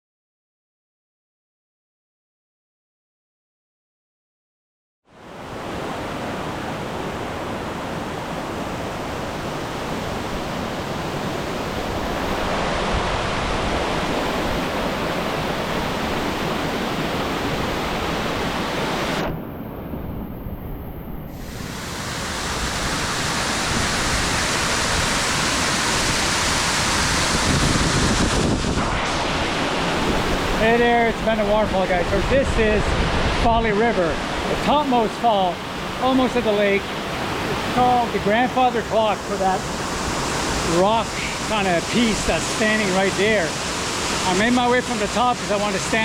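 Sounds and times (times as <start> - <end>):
waterfall roaring: 21.4 - 46.0.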